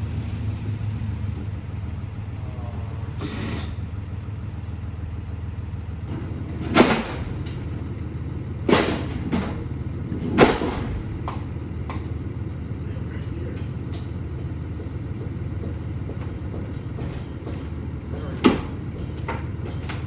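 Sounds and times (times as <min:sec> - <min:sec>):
truck engine idling: 0:00.0 - 0:20.0
loud clunks: 0:06.1 - 0:20.0.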